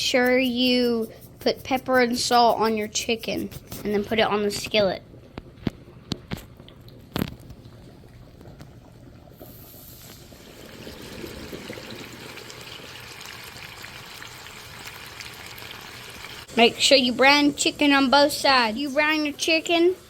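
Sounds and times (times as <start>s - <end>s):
chicken sizzling in oil: 9.5s - 20.0s.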